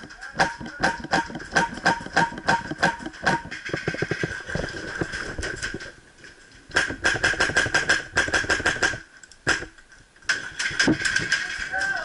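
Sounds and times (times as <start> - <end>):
airsoft gun firing shots: 0.4 - 3.6, 6.7 - 9.7.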